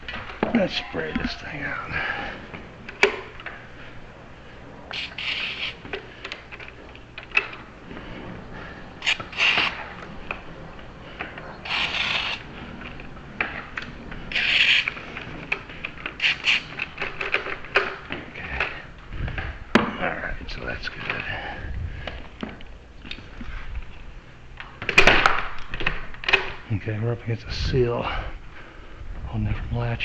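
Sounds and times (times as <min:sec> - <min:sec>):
aerosol spray hissing: 0:04.9 - 0:05.8, 0:09.0 - 0:09.8, 0:11.6 - 0:12.5, 0:16.2 - 0:16.7
lock mechanism clicking and ratcheting: 0:11.7 - 0:18.0, 0:24.9 - 0:26.6.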